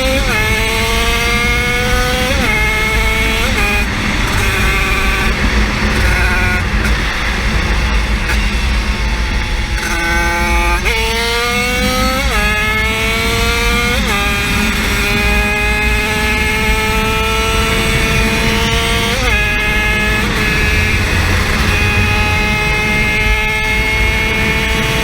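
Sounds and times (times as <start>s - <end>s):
small engine at full throttle: 0.0s - 25.0s.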